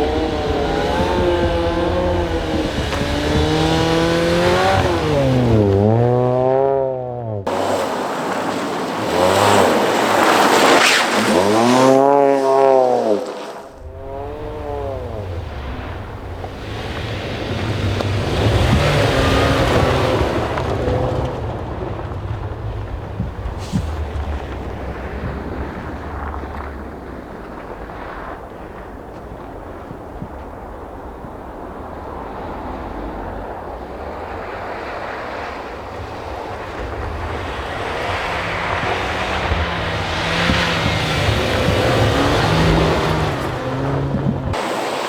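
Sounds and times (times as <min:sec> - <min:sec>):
wind buffeting microphone: 0:00.0 - 0:06.3, 0:13.1 - 0:45.0
tyre noise on snow: 0:00.0 - 0:06.8, 0:07.5 - 0:45.0
rally car engine rumble: 0:00.0 - 0:44.6.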